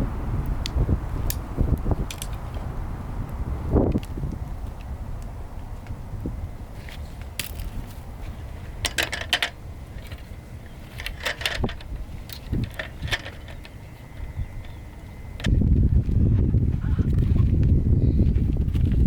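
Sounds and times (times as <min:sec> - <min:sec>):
wind rumble on microphone: 0:00.0 - 0:19.0.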